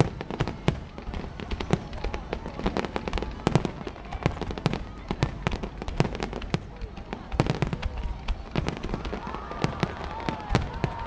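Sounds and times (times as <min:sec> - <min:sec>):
fireworks popping and cracking: 0:00.0 - 0:11.0.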